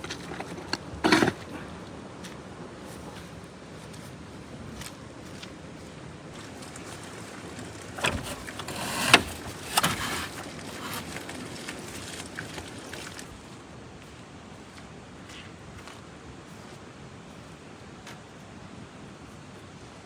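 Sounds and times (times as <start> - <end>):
objects knocking and clattering: 0.0 - 1.7.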